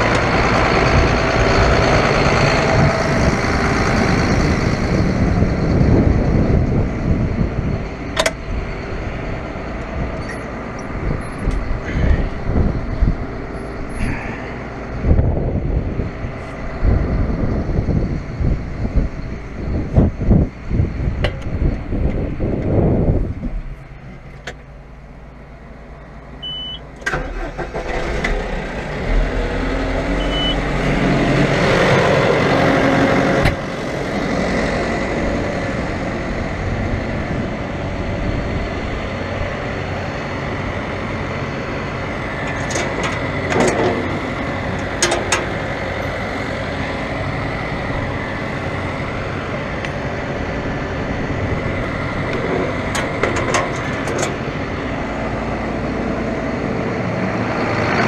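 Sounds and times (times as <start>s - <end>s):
diesel engine of heavy machinery: 0.0s - 58.0s.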